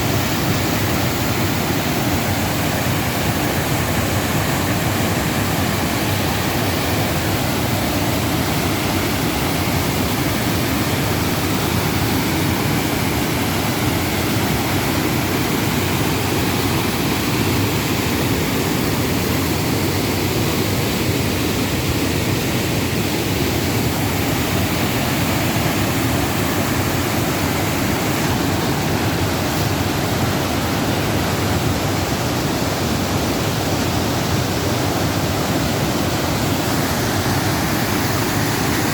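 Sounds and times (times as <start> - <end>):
waterfall rushing: 0.0 - 38.9.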